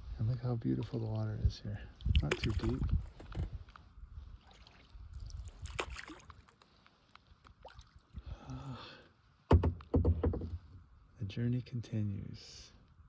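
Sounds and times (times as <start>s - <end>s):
wind on microphone: 1.4s - 4.4s
water sloshing and dripping: 2.0s - 3.8s, 4.4s - 8.2s
kayak paddle strokes: 5.5s - 7.8s.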